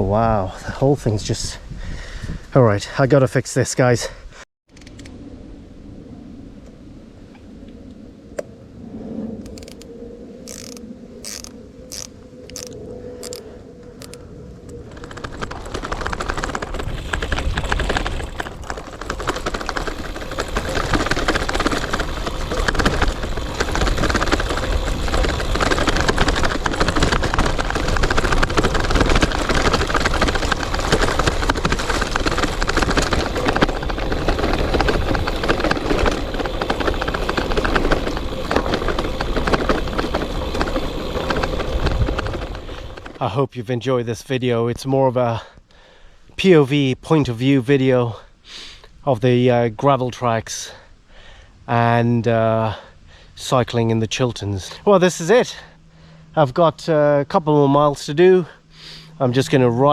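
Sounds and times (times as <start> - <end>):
bike tyres rumbling on gravel: 10.5 - 43.4.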